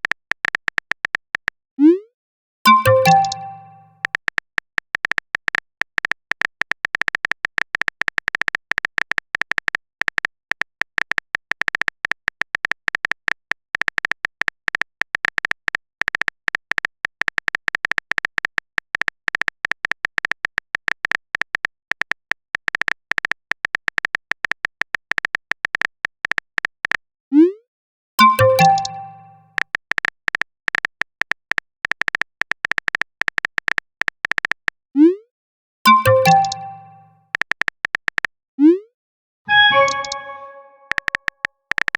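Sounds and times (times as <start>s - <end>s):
phone keyboard typing clicks: 2.7s - 11.5s, 28.2s - 29.6s, 35.9s - 38.3s.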